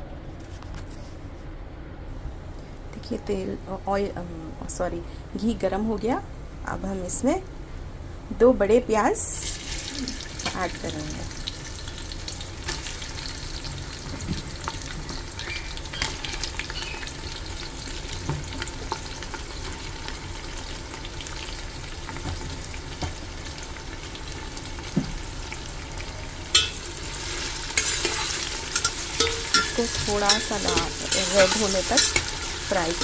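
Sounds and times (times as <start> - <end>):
onions sizzling in oil: 9.1 - 33.0.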